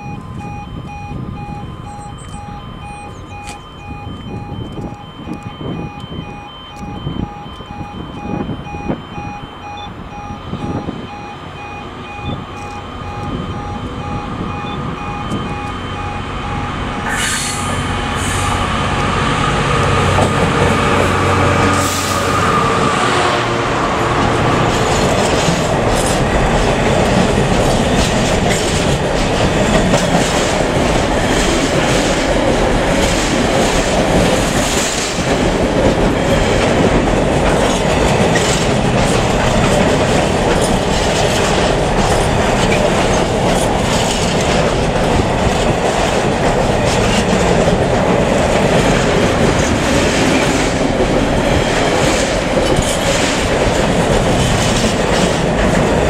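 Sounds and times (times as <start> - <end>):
pulsing electronic alarm tones: 0.0 - 23.3
diesel locomotive engine growling: 0.0 - 56.0
train wheels clacking on rails: 2.0 - 56.0.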